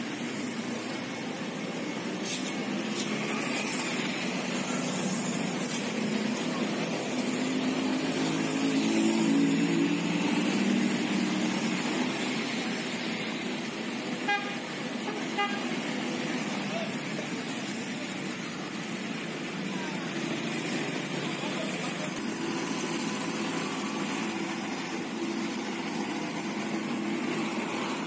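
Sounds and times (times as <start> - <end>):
heavy machinery engine running: 0.0 - 28.0.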